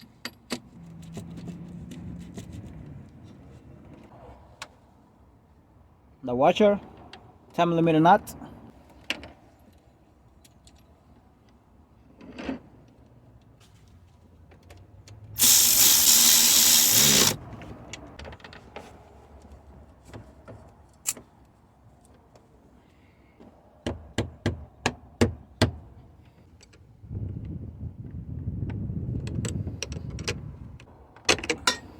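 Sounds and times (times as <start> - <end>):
power tool driving a nut: 15.4 - 17.4.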